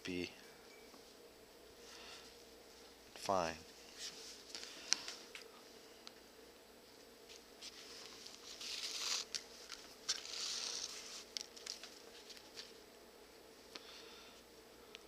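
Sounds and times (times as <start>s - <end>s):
needle and leather rustles: 7.3s - 12.6s
thread drawn through leather: 8.4s - 9.4s.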